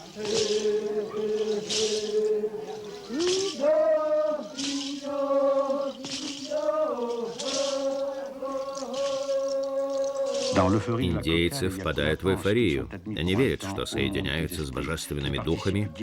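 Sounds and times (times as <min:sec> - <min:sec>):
men chanting: 0:00.0 - 0:16.0
rattles shaken: 0:00.1 - 0:11.0.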